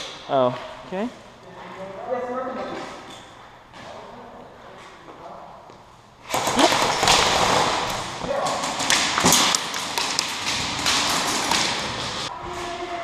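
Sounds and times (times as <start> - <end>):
pellets knocking on hard surfaces: 6.3 - 12.3
rapid airsoft gunfire: 6.3 - 12.3.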